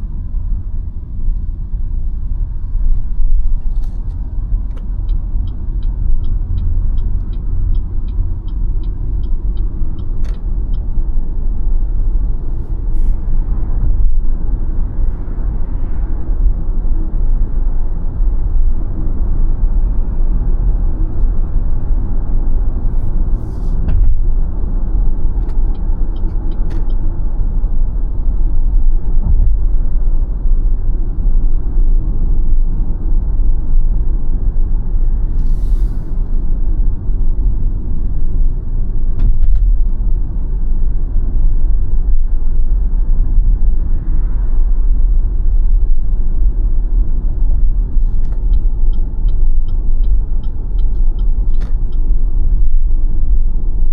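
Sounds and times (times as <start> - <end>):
road and tyre rumble: 0.0 - 53.9
brief hiss: 35.4 - 36.4.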